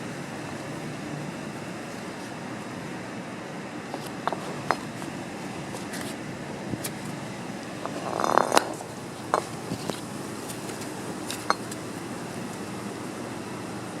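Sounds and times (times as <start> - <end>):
steady mechanical hum: 0.0 - 14.0
metal clinking: 3.9 - 6.2, 6.8 - 12.0.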